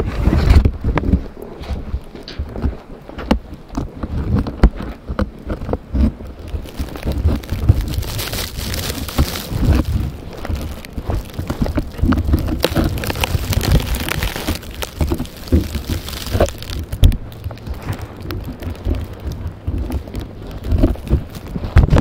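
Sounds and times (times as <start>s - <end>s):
snow ticking: 3.6s - 22.0s
blizzard wind gusting: 4.0s - 22.0s.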